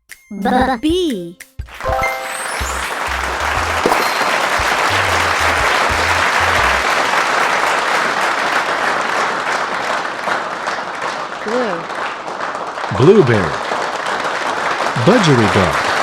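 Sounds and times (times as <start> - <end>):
applause: 0.5 - 16.0
low bass notes: 2.6 - 3.9, 4.6 - 6.8.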